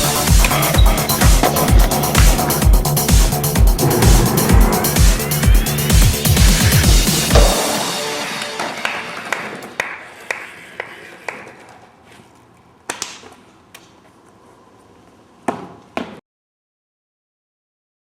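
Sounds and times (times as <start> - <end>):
background noise: 7.6 - 16.2.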